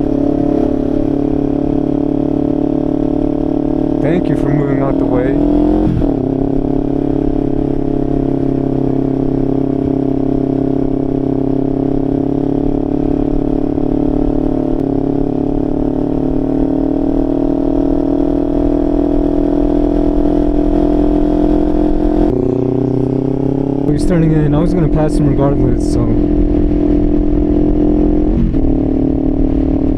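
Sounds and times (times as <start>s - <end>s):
motorcycle engine running: 0.0s - 29.9s
low wind rumble: 12.5s - 29.9s.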